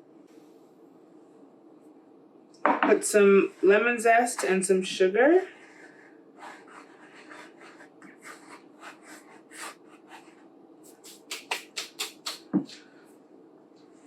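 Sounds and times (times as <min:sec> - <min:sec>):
zest scraping strokes: 0:06.4 - 0:12.5.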